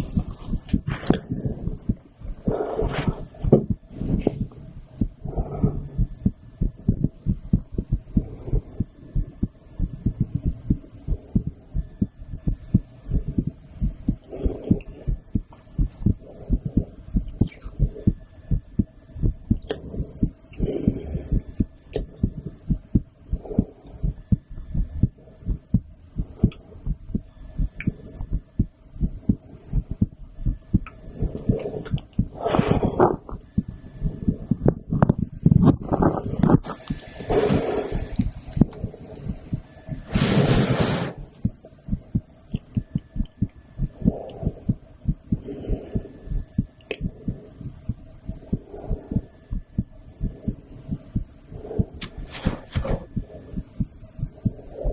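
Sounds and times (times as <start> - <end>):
scratchy noises: 0.0 - 1.8, 2.4 - 4.8, 34.0 - 38.7, 40.0 - 41.4, 51.8 - 53.6
faint steady hum: 0.0 - 54.9
heartbeat thuds through stethoscope: 0.0 - 54.9.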